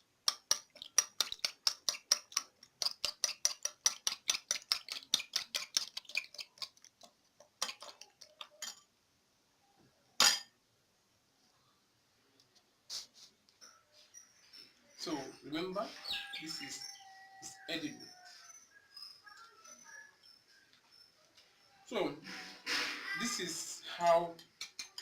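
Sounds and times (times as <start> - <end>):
spoon clinking against container: 7.6 - 8.9, 24.4 - 25.0.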